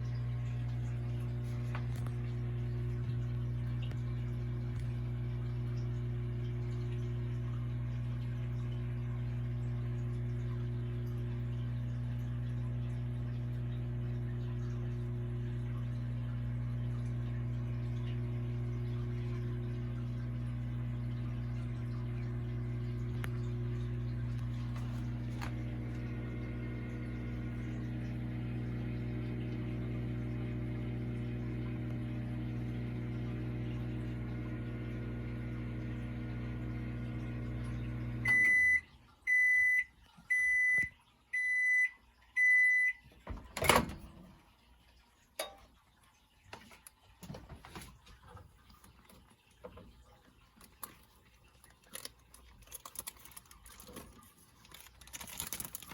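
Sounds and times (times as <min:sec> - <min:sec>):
microwave oven humming: 0:00.0 - 0:44.6, 0:51.9 - 0:55.9
microwave beeps: 0:08.2 - 0:44.1.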